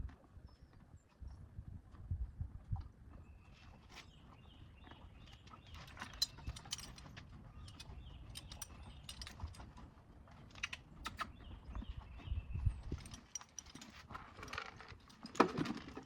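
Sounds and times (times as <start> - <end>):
horse tack clicking and jingling: 3.6 - 16.0.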